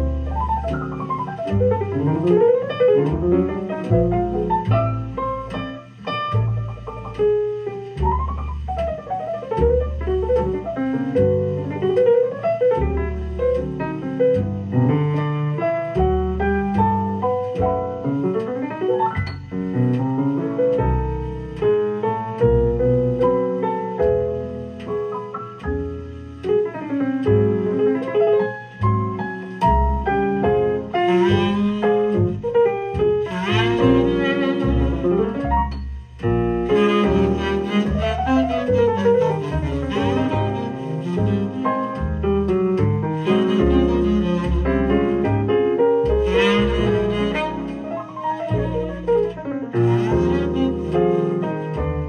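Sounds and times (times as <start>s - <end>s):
bass line: 0.0s - 52.0s
jazz piano: 0.0s - 52.0s.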